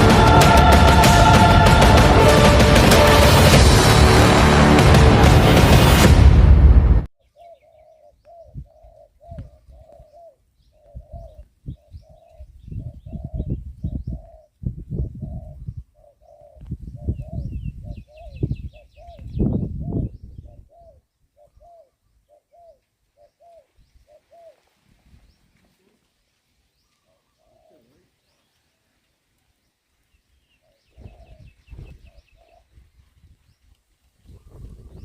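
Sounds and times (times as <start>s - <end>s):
low rumbling noise: 0.0s - 7.1s
small birds chirping: 7.2s - 24.6s, 25.2s - 35.0s
dove cooing: 7.4s - 13.5s, 15.2s - 24.6s, 27.1s - 28.1s.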